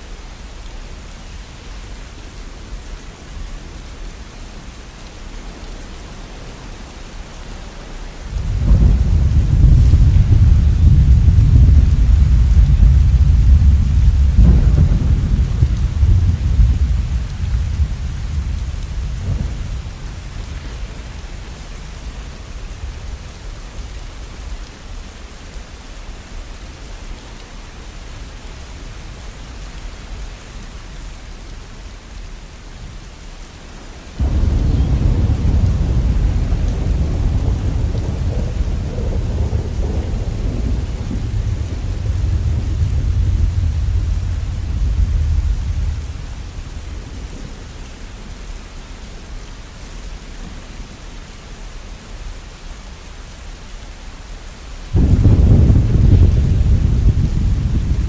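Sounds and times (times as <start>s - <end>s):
rain falling steadily: 0.0s - 58.0s
thunder rumbling: 8.2s - 23.6s, 34.2s - 48.0s, 54.9s - 58.0s.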